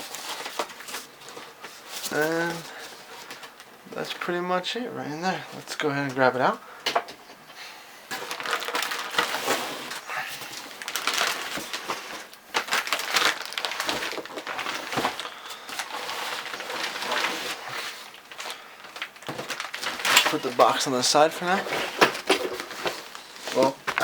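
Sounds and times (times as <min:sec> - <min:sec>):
cardboard box rustling and scraping: 0:10.8 - 0:18.0, 0:21.5 - 0:24.0.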